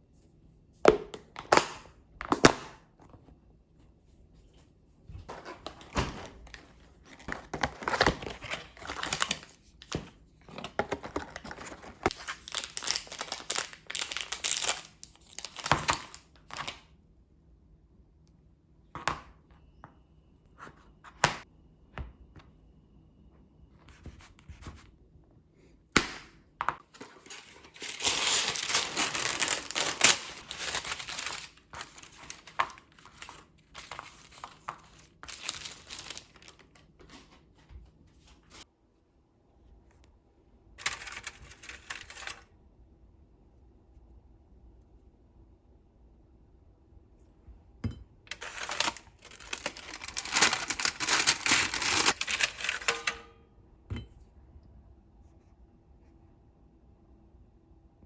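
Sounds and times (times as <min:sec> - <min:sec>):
plastic wrapper crinkling: 0:05.8 - 0:09.6, 0:11.0 - 0:16.8, 0:27.0 - 0:37.3, 0:40.8 - 0:42.5, 0:48.3 - 0:53.1.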